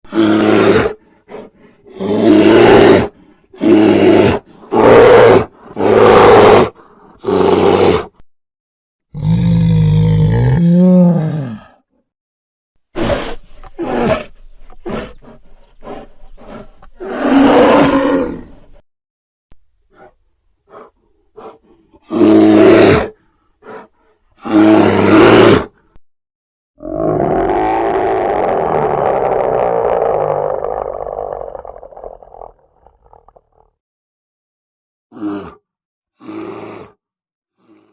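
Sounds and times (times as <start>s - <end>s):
bear roaring: 0.1s - 8.1s, 9.1s - 11.8s, 15.8s - 18.6s, 20.7s - 25.8s, 26.8s - 33.6s, 35.2s - 35.6s
bear growling: 26.8s - 33.6s.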